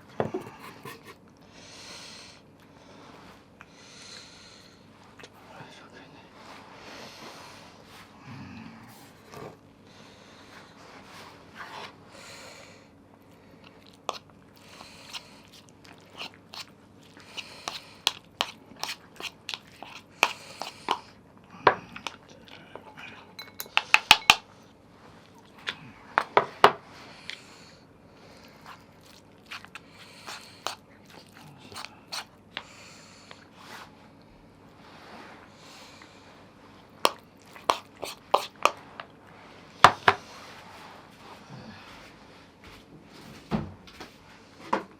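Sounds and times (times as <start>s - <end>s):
cat crunching dry food: 13.7s - 20.9s
dishes and utensils clinking: 23.3s - 24.4s.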